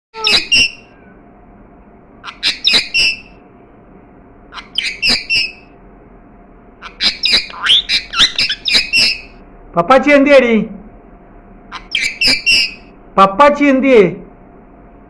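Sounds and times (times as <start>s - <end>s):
parrot squawking: 0.2s - 1.2s, 2.2s - 3.4s, 4.5s - 5.7s, 6.8s - 9.4s, 11.7s - 13.0s.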